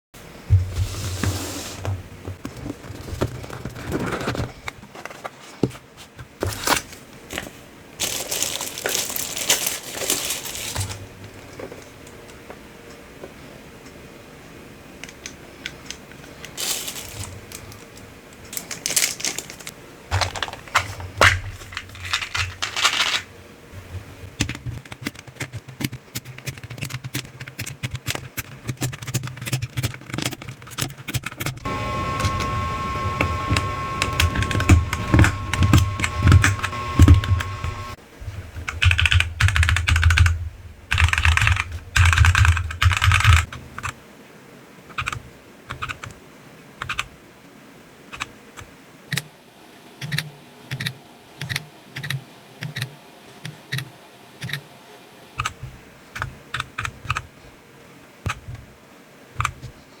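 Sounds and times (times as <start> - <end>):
mechanical keys clattering: 15.8 - 23.3
steady tone: 31.7 - 38.0.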